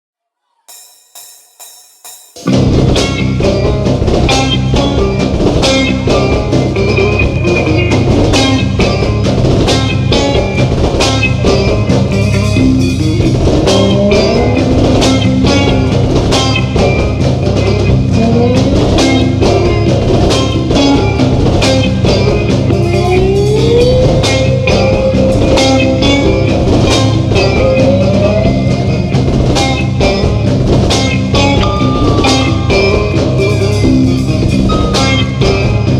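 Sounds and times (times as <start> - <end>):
cymbal crash: 0.7 - 3.2, 31.7 - 35.9
rock band playing heavy riff: 0.7 - 35.9.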